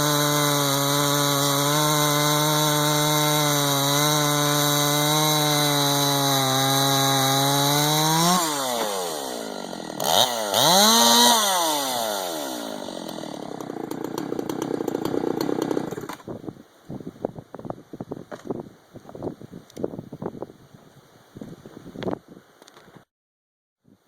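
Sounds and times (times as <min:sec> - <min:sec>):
chainsaw cutting wood: 0:00.0 - 0:16.3.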